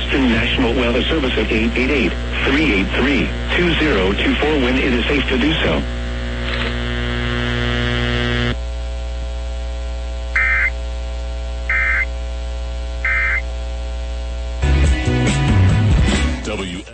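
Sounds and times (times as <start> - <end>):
steady electrical buzz: 0.0 - 14.8
digital data tone bursts: 10.4 - 10.8, 11.7 - 12.1, 13.0 - 13.4.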